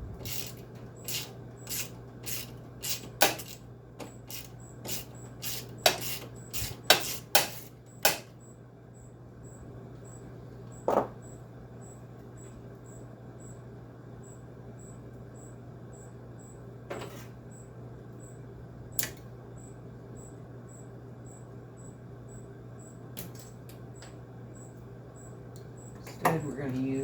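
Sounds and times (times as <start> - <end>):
steady low hum: 0.0 - 27.0
tools clicking and knocking: 0.2 - 8.3.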